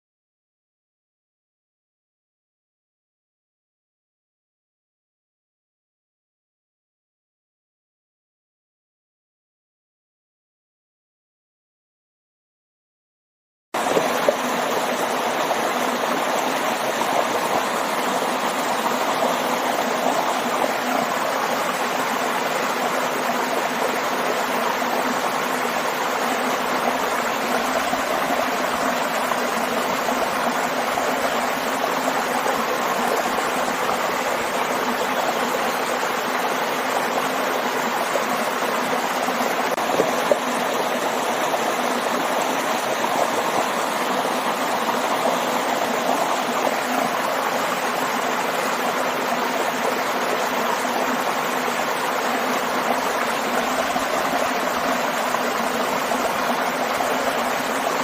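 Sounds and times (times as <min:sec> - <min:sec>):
waterfall and stream rushing: 0:13.8 - 0:58.0.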